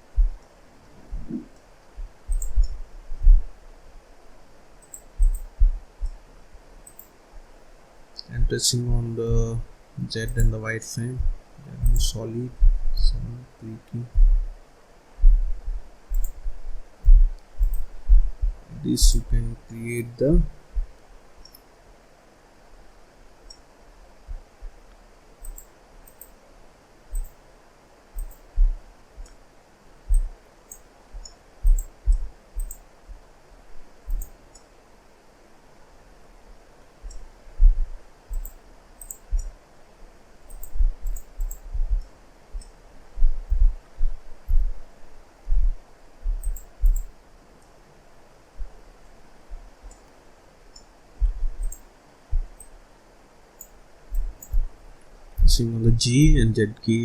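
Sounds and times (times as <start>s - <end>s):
soft low thumps: 0.0s - 3.6s, 5.2s - 6.2s, 8.3s - 13.4s, 14.0s - 14.6s, 15.2s - 19.6s, 20.2s - 21.0s, 24.2s - 24.8s, 28.2s - 29.4s, 30.0s - 30.4s, 31.1s - 34.4s, 37.0s - 38.6s, 39.2s - 39.6s, 40.5s - 47.1s, 48.5s - 48.9s, 49.5s - 50.0s, 51.2s - 52.6s, 54.1s - 54.8s, 55.4s - 55.6s
faint steady hiss: 0.0s - 57.0s
mouse and keyboard clicking: 2.3s - 2.8s, 4.8s - 6.2s, 6.8s - 7.1s, 10.2s - 10.6s, 11.8s - 12.2s, 16.1s - 16.4s, 17.6s - 17.9s, 25.4s - 26.4s, 27.1s - 27.4s, 28.2s - 28.5s, 30.1s - 32.9s, 34.1s - 34.7s, 38.3s - 39.5s, 40.5s - 41.7s, 46.4s - 47.1s, 51.6s - 51.9s.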